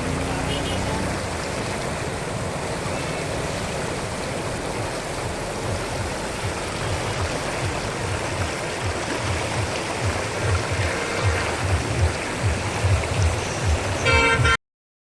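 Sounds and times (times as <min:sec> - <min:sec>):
floodwater rushing: 0:00.0 - 0:14.6.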